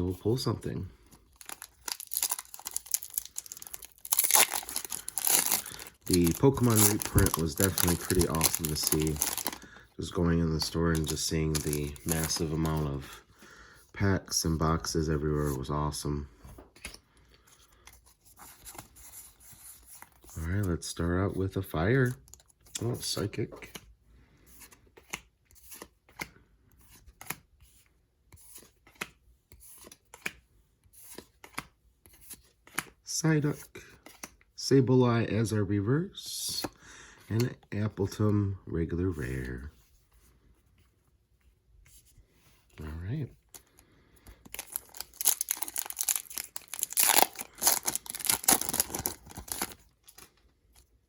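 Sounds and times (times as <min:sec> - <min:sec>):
foil wrapper tearing and crinkling: 0:01.3 - 0:09.8, 0:44.5 - 0:50.3.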